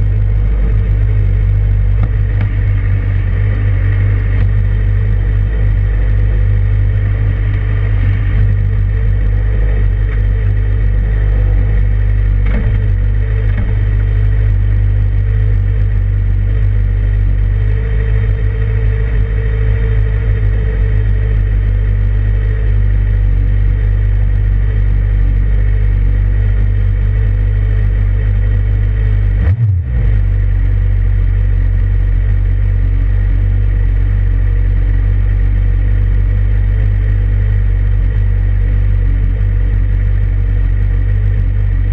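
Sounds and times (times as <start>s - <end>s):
motorcycle engine running: 0.0s - 41.9s.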